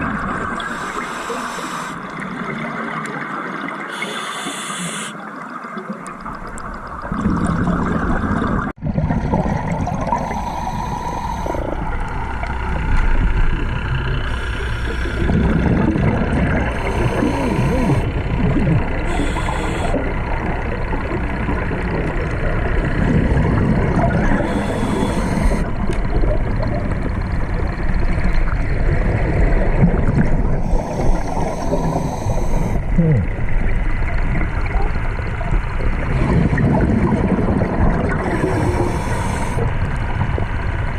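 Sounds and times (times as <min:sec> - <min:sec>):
regulator breathing hiss: 0:00.6 - 0:02.0, 0:03.9 - 0:05.2, 0:10.2 - 0:11.8, 0:14.1 - 0:15.4, 0:16.6 - 0:18.2, 0:19.0 - 0:20.2, 0:24.3 - 0:25.8, 0:30.6 - 0:32.9, 0:38.2 - 0:39.7
bubbles gurgling: 0:05.2 - 0:40.7
steady low rumble: 0:09.3 - 0:40.9.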